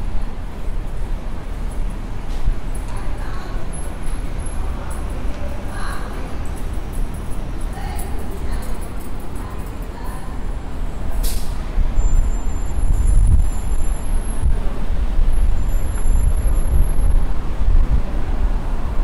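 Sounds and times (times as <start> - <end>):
engine rumble of passing vehicles: 0.0 - 19.0
short hiss: 11.2 - 11.6.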